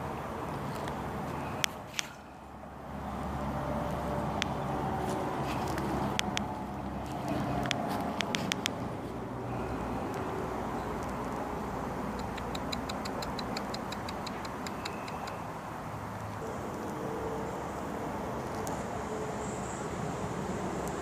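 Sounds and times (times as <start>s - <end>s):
distant traffic: 0.0s - 21.0s
animal chirping rapidly: 12.2s - 15.5s.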